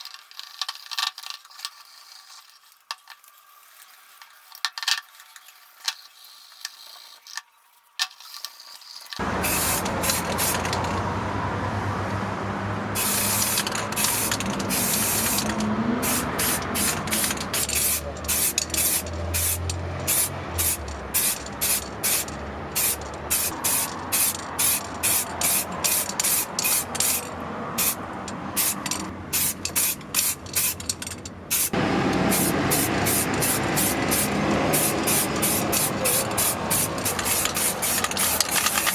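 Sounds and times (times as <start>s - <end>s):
spray paint hissing: 5.3s - 7.4s, 8.0s - 11.0s, 13.0s - 38.9s
short spray bursts: 8.9s - 10.9s, 13.0s - 28.0s, 28.6s - 30.9s, 31.5s - 38.9s.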